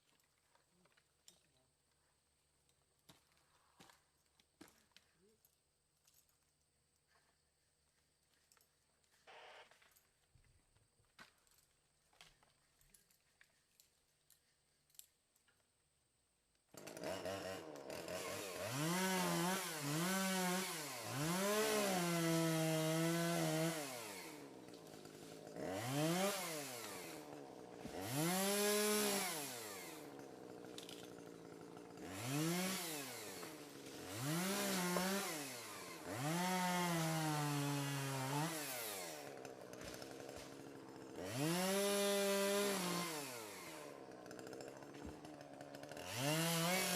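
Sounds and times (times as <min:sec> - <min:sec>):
chainsaw revving cutting wood: 0:09.3 - 0:09.6, 0:16.7 - 0:46.9.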